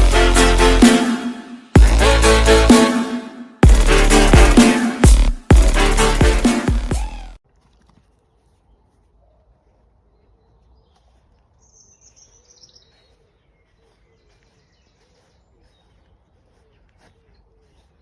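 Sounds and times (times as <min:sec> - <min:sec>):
faint birdsong: 0:08.1 - 0:18.0
high falling bird chirp: 0:10.2 - 0:18.0.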